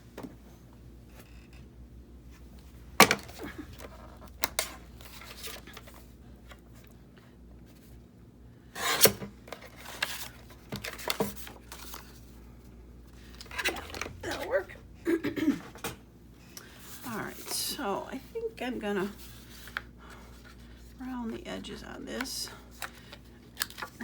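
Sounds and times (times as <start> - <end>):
paper shuffling: 19.0 - 21.0.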